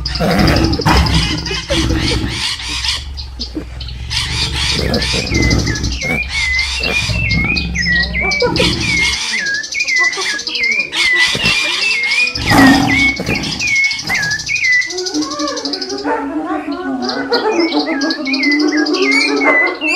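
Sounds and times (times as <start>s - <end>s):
low hum: 0.0s - 9.2s
bird chirping: 0.0s - 16.0s.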